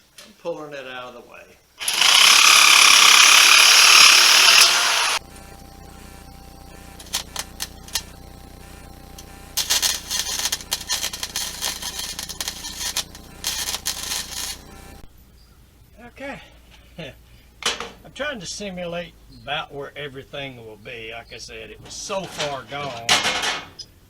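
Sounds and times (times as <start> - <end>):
power nibbler cutting sheet metal: 1.8 - 15.0
sheet metal clicks and clatter: 22.2 - 23.8.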